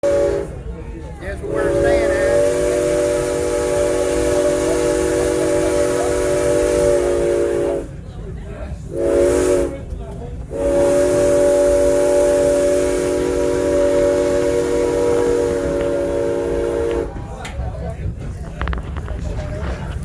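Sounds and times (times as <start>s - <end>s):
steam hiss: 1.4s - 8.1s, 8.8s - 17.3s
steam locomotive chime whistle: 1.5s - 8.0s, 10.5s - 17.2s.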